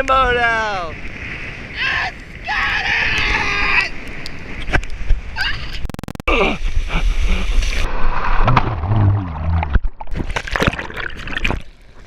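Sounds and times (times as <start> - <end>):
wind buffeting microphone: 0.0 - 5.6
people shouting: 1.8 - 4.0
water splashing: 6.6 - 12.0.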